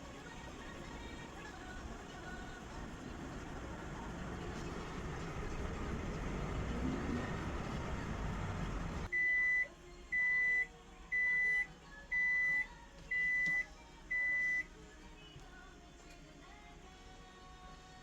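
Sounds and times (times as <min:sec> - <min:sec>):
noisy machine running: 0:00.0 - 0:09.1
washing machine buzzer beeping: 0:05.0 - 0:14.7.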